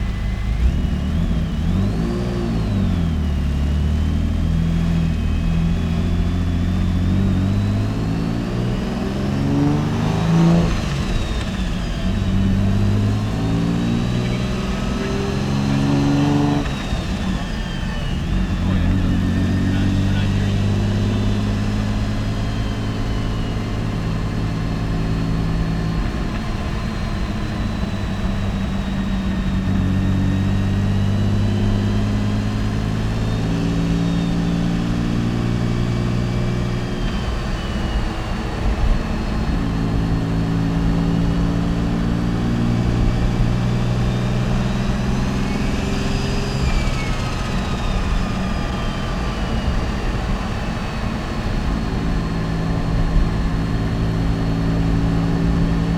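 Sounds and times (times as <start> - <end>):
car engine running: 0.0 - 55.9
faint high turbo whistle: 35.6 - 40.2, 42.6 - 55.9.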